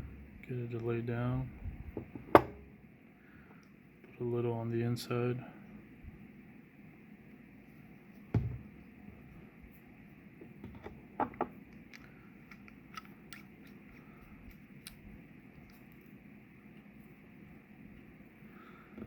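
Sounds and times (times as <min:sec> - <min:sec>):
dull knock: 0:08.4 - 0:08.7.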